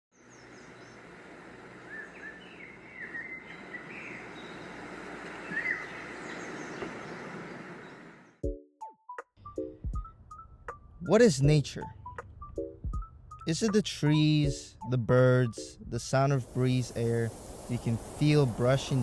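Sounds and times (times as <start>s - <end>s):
small birds chirping: 0.1s - 8.4s
steady rushing background: 16.2s - 19.0s.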